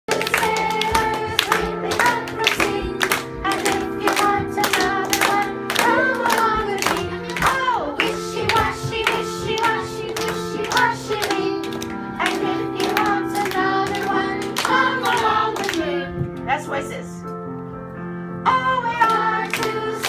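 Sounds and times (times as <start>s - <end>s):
clapping beat: 0.1s - 16.0s.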